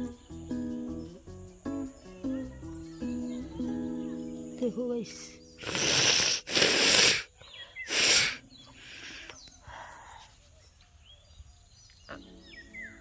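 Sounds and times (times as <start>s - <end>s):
person blowing nose: 5.6s - 7.3s, 7.9s - 8.4s.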